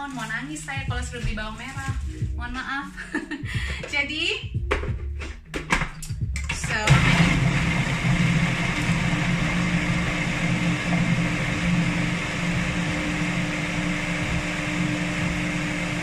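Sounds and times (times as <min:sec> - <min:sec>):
food processor motor hum: 0:06.7 - 0:16.0.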